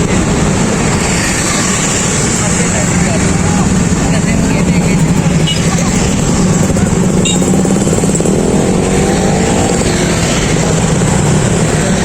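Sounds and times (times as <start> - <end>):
busy street market din: 0.0 - 12.0
vehicle engine running: 2.5 - 12.0.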